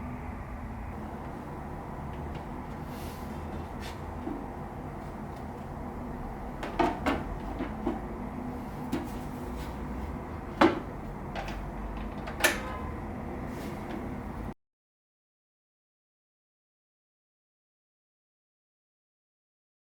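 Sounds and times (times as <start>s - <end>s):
steady low hum: 0.0s - 14.6s.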